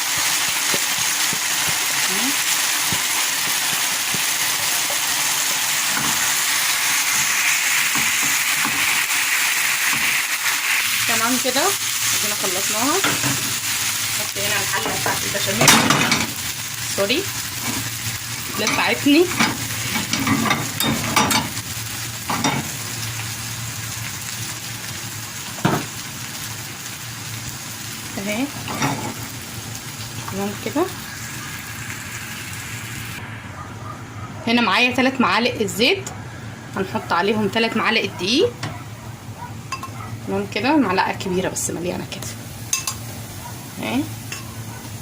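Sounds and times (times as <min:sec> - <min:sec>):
food sizzling in a pan: 0:00.0 - 0:33.5, 0:39.7 - 0:45.0.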